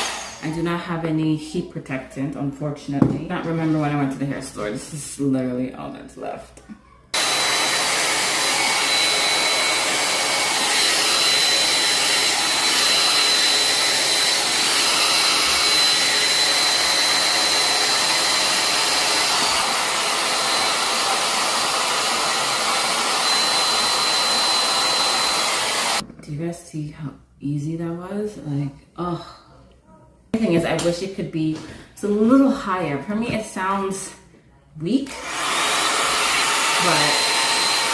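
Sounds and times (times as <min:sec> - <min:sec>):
blow dryer running: 0:00.0 - 0:00.6, 0:07.2 - 0:26.0, 0:35.1 - 0:37.9.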